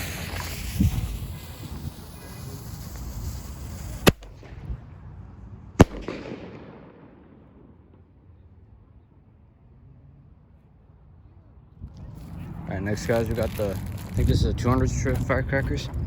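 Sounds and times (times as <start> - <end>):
firework fuse hissing: 0.0 - 4.7, 13.0 - 15.3
firework bangs: 0.0 - 5.1, 5.8 - 8.1.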